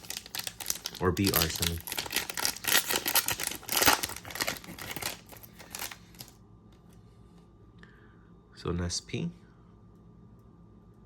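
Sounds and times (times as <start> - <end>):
wrapper tearing and crinkling: 0.0 - 6.4.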